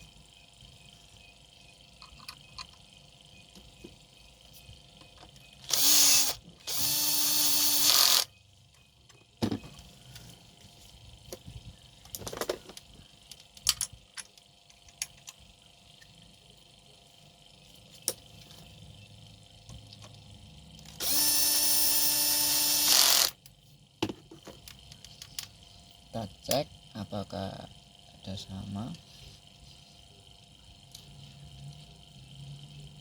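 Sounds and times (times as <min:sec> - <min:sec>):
small power tool motor: 0:05.6 - 0:08.4, 0:20.9 - 0:23.4
tools clicking and knocking: 0:12.1 - 0:15.4.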